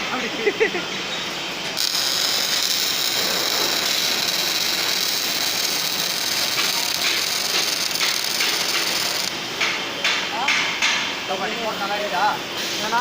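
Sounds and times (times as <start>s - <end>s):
welding arc hissing: 1.7s - 9.7s.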